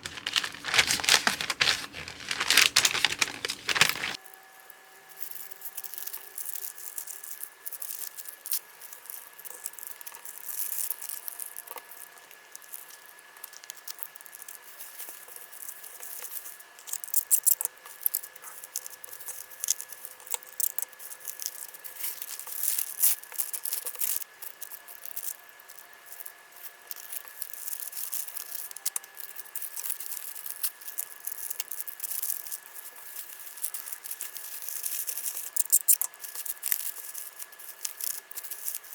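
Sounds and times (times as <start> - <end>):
plastic packaging crinkling: 0.0 - 4.2, 26.9 - 38.9
small items clicking and rattling: 0.0 - 4.2, 26.9 - 38.9.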